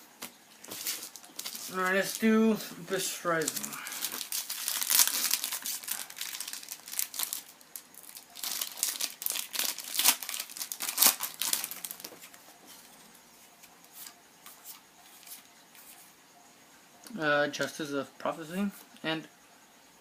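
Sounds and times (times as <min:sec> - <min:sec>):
foil wrapper tearing and crinkling: 0:00.7 - 0:02.3, 0:03.4 - 0:12.3.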